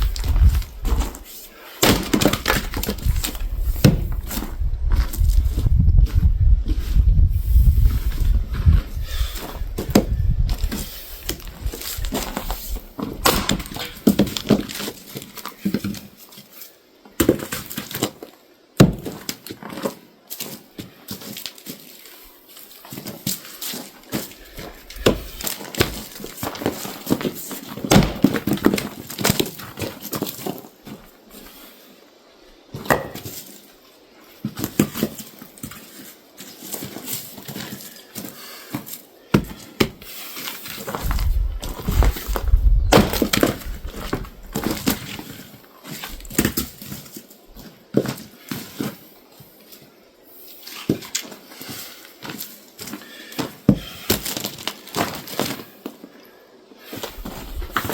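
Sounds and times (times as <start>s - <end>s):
wood cracking apart: 1.8s - 4.4s, 9.9s - 16.0s, 23.6s - 30.6s, 41.0s - 45.2s, 54.0s - 55.7s
split wood clattering down: 13.0s - 14.8s.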